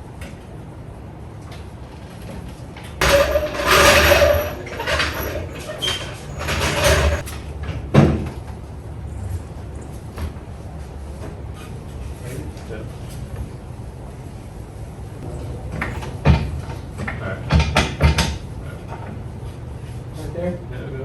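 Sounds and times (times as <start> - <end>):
harsh scraping and rattling: 2.8 - 7.4.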